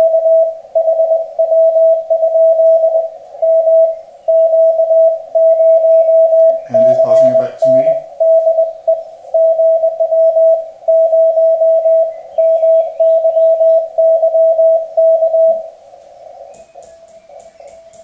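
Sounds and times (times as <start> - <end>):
morse code tone: 0.0 - 15.8
faint radio tone: 5.6 - 8.2.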